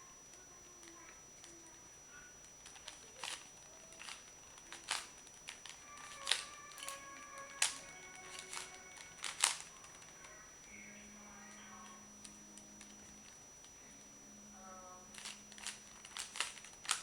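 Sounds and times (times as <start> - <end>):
faint music: 0.0 - 17.0
puzzle cube plastic clicks: 2.5 - 10.7, 15.1 - 17.0.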